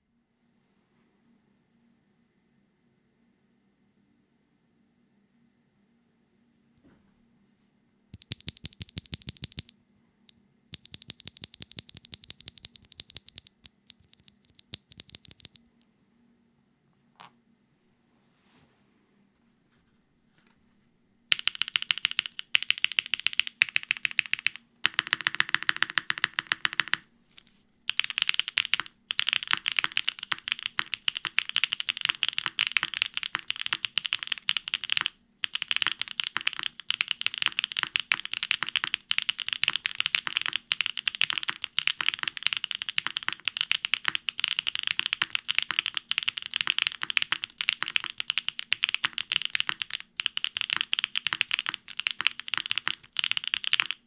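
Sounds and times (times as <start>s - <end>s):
fast mechanical keyboard typing: 8.2s - 9.7s, 10.8s - 15.6s, 21.3s - 54.0s.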